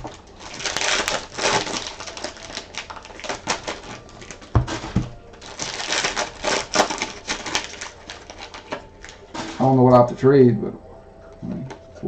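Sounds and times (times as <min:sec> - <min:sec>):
dull thumps: 0:04.5 - 0:05.4.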